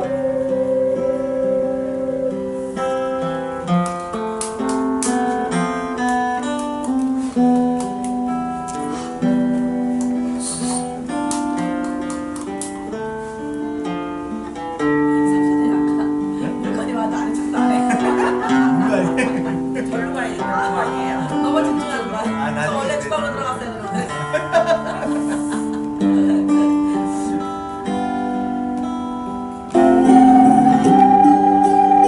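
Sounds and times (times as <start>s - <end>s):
ocarina melody: 0.0s - 3.7s, 29.7s - 32.0s
strummed guitar: 0.0s - 32.0s.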